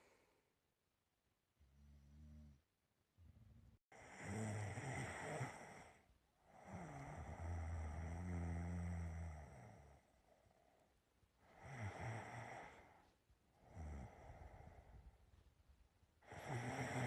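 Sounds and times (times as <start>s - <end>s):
person snoring: 4.0s - 10.0s, 11.5s - 13.0s, 13.6s - 14.8s, 16.2s - 17.0s.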